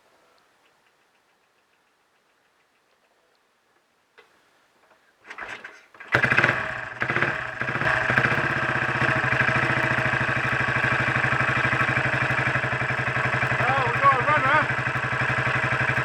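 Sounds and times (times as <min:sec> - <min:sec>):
motorcycle engine kick-started: 0:05.2 - 0:16.0.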